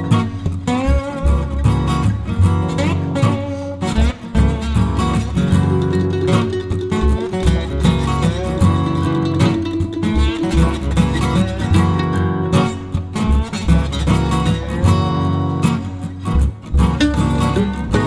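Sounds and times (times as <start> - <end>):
strummed acoustic guitar: 0.0 - 18.0
bass line: 4.0 - 15.6
steady beat: 4.7 - 15.2.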